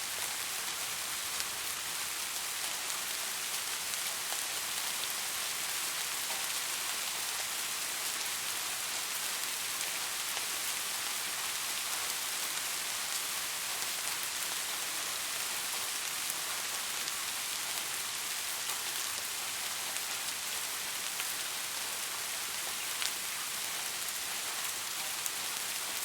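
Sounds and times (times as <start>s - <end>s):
rain hiss: 0.0s - 26.0s.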